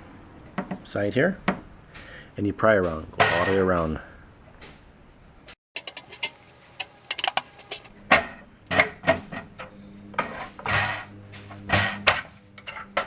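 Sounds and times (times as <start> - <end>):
metal tool prying off hubcap: 5.8 - 11.1.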